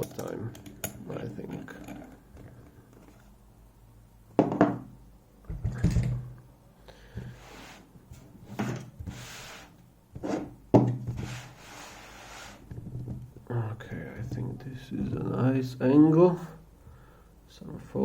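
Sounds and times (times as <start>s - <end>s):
knocks and thuds on work surface: 4.4s - 4.9s, 10.2s - 11.2s
rubbing and shuffling: 7.2s - 13.2s.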